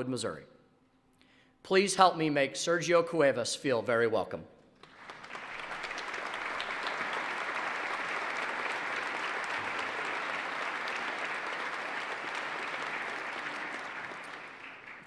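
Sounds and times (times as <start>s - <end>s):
audience applauding: 4.8s - 15.0s.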